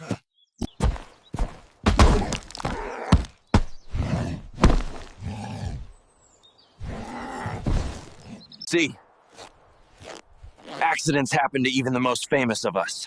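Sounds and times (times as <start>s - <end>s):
thuds of person falling: 0.8s - 3.8s, 4.6s - 5.1s.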